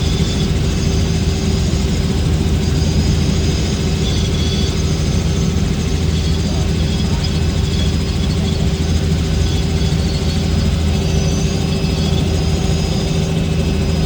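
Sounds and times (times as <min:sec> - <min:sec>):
helicopter engine and rotor drone: 0:00.0 - 0:14.0.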